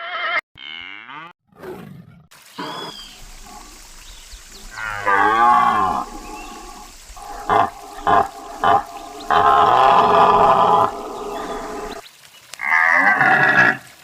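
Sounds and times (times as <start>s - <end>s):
deer calling: 2.6s - 12.0s.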